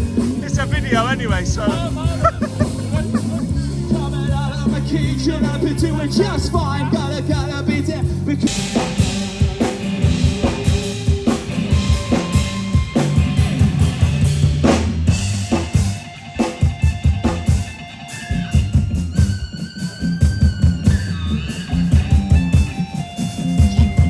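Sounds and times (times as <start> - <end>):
drum kit beat with cymbals: 0.0 - 24.0
upbeat band music with singing: 0.0 - 24.0
person singing: 0.7 - 10.3.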